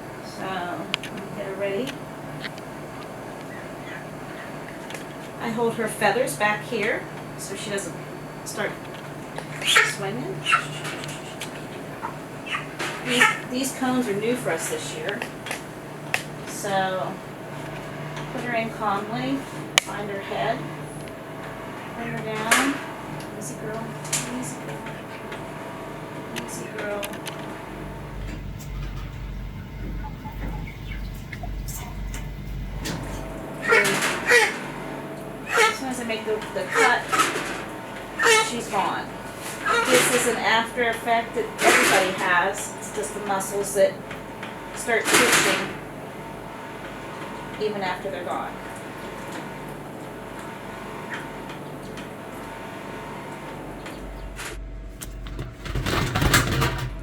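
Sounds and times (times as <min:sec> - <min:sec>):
low uneven rumble: 0:16.4 - 0:34.2
rustling and knocking: 0:54.4 - 0:57.0.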